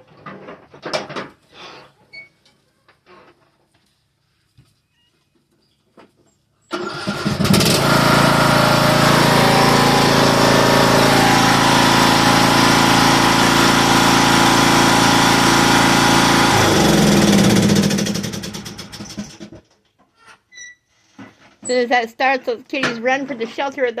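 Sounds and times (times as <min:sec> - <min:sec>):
lawn mower engine running: 0:06.7 - 0:19.6.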